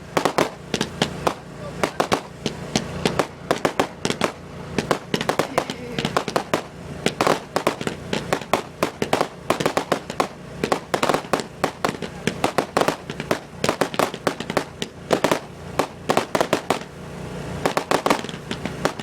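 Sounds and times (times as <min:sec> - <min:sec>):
fireworks bangs and crackles: 0:00.0 - 0:19.0.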